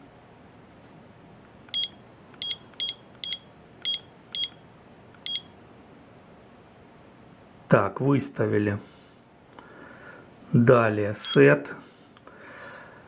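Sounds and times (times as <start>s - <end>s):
alarm clock button beeps: 1.7s - 4.6s, 5.2s - 5.5s.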